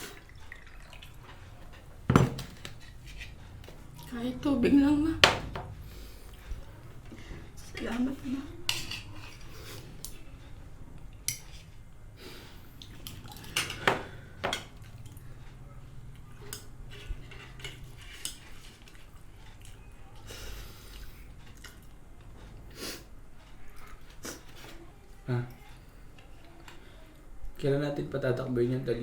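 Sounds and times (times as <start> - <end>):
cutlery clinking on plates: 8.6 - 9.5, 13.1 - 14.9.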